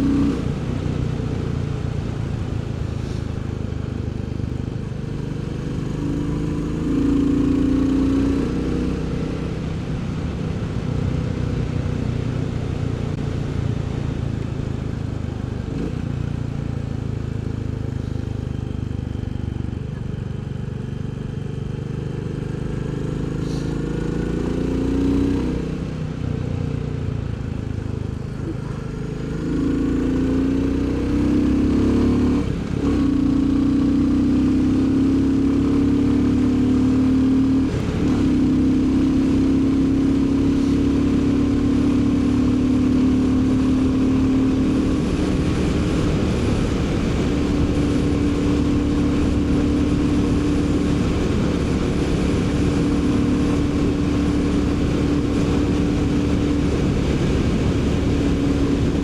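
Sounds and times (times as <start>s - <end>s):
motorcycle engine accelerating: 0.0s - 59.0s
wind noise: 37.6s - 59.0s.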